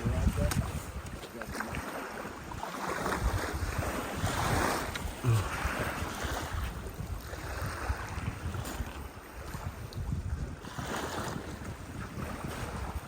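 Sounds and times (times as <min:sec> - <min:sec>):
lake waves lapping: 0:00.0 - 0:13.0
wind buffeting microphone: 0:00.0 - 0:13.0.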